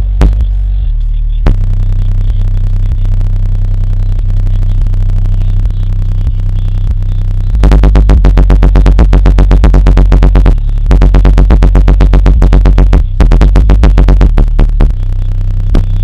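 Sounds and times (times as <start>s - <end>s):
bass-heavy electronic music: 0.0s - 16.0s
pounding beat: 0.1s - 0.5s, 7.6s - 15.0s, 15.7s - 16.0s.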